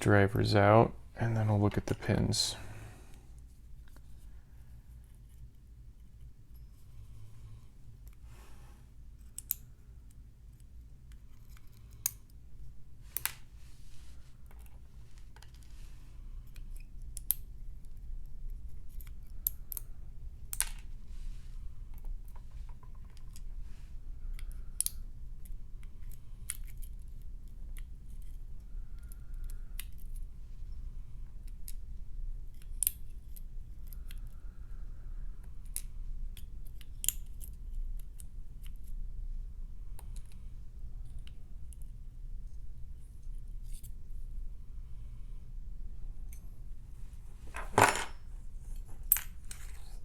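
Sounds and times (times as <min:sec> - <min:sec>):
steady low hum: 0:00.0 - 0:50.0.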